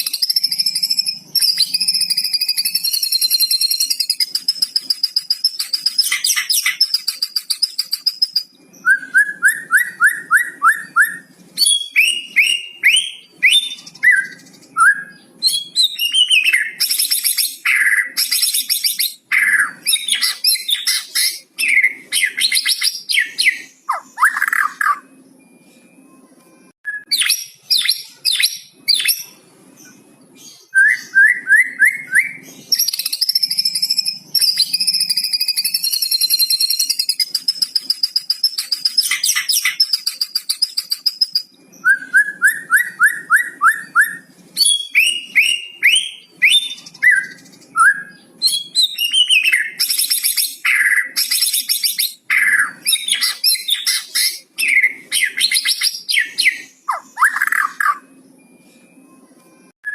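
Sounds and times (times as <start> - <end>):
songbird singing varied song: 0.0 - 25.2.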